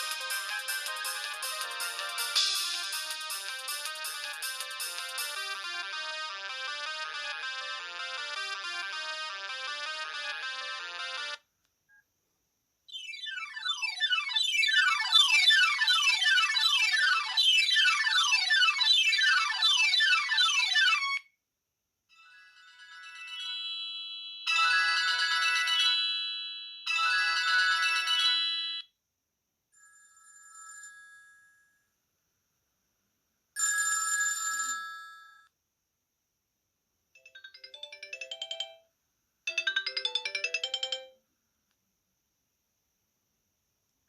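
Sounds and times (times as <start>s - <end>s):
mobile phone ringtones: 22.2s - 28.8s.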